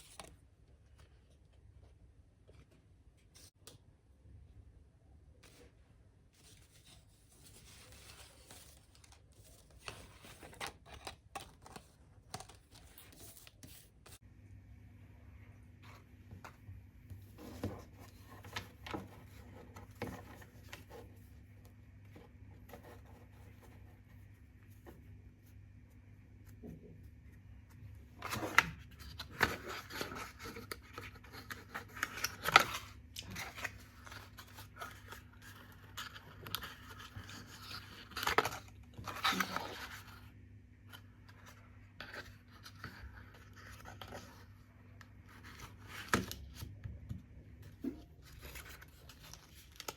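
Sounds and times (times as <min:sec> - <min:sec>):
paper rustling and scraping: 0:06.4 - 0:14.2, 0:17.2 - 0:21.4, 0:28.2 - 0:40.3, 0:47.7 - 0:49.9.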